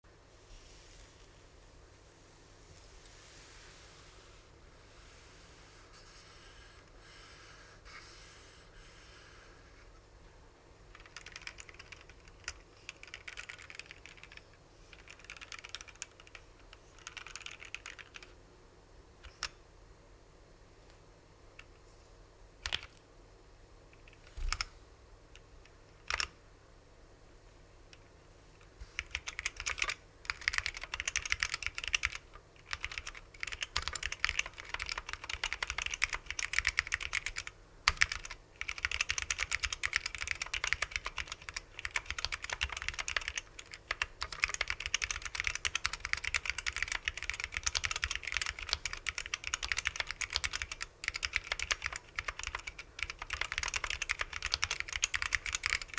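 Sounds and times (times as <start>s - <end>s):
mechanical keyboard typing: 10.9s - 18.4s, 22.6s - 23.0s, 25.9s - 26.4s, 29.0s - 55.9s.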